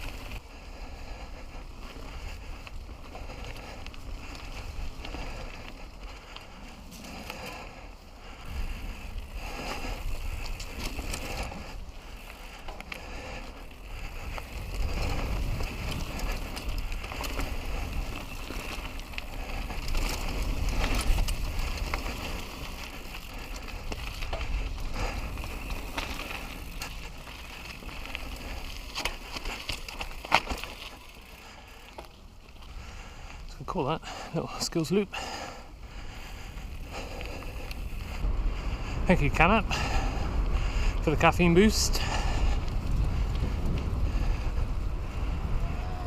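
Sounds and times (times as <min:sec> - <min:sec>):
bike clicks and rattles: 0:00.0 - 0:46.0
bike tyres on dirt and stones: 0:00.0 - 0:46.0
wind rumble on microphone: 0:08.2 - 0:27.2, 0:35.9 - 0:41.2, 0:41.9 - 0:46.0.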